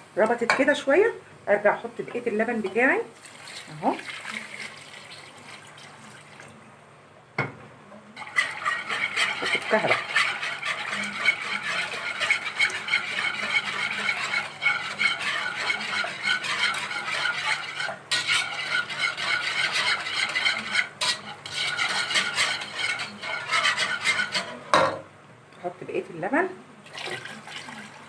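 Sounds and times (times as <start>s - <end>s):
utensil stirring and scraping pot: 2.1s - 6.0s, 8.2s - 25.0s.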